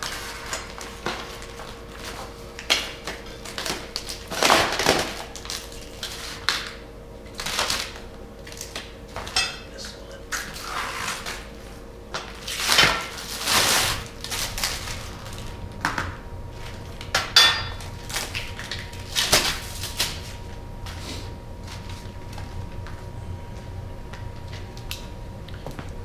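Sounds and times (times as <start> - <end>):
low hum: 0.0 - 26.0
hardware clinking and knocking: 9.3 - 9.7.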